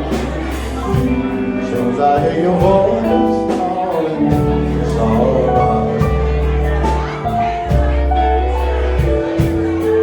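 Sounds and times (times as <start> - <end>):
guitar: 0.0 - 10.0
held bass notes: 0.0 - 10.0.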